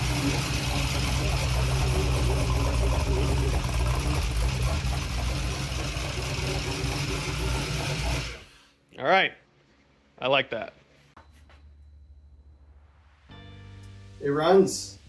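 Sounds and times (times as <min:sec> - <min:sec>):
engine idling: 0:00.0 - 0:08.6.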